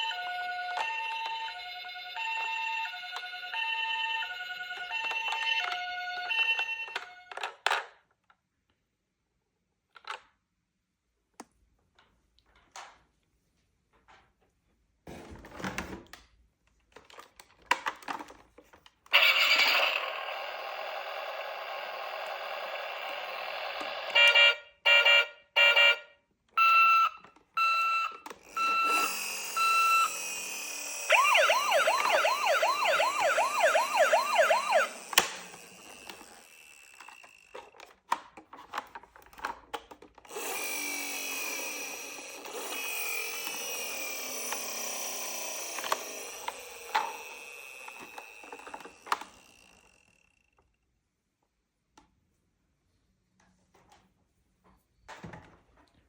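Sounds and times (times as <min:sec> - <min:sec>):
toy siren steady electronic tone: 0:00.0 - 0:07.2, 0:19.2 - 0:26.0, 0:26.6 - 0:37.6, 0:40.3 - 0:50.2
clicks of toy being handled: 0:06.6 - 0:08.4, 0:09.9 - 0:10.4, 0:16.1 - 0:19.5, 0:34.8 - 0:40.8, 0:45.7 - 0:49.8
toy siren fast warbling wail: 0:19.1 - 0:25.9, 0:26.6 - 0:37.3, 0:40.3 - 0:50.1
toy siren short beeps: 0:19.2 - 0:20.3, 0:24.0 - 0:36.6.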